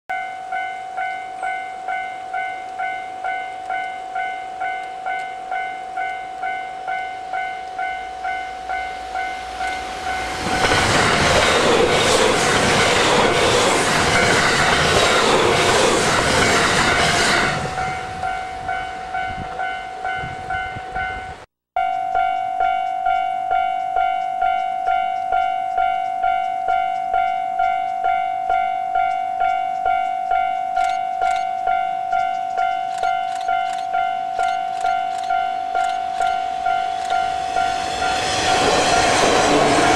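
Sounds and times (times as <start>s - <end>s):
level-crossing warning bell: 0.1s - 39.9s
train wheels clattering on rails: 9.2s - 20.6s, 22.9s - 39.9s.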